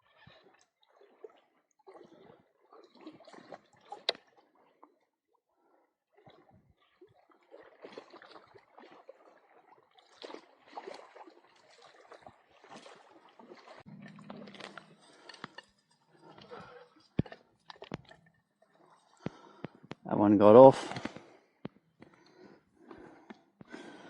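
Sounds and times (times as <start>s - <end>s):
shallow water splashing: 0.0s - 24.0s
low hum: 13.9s - 18.2s.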